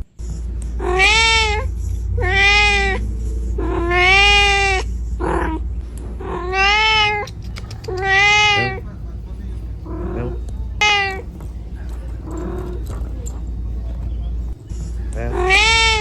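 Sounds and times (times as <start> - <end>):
kitten meowing: 0.8 - 3.0, 3.6 - 5.6, 6.2 - 8.9, 9.8 - 11.6, 14.5 - 16.0.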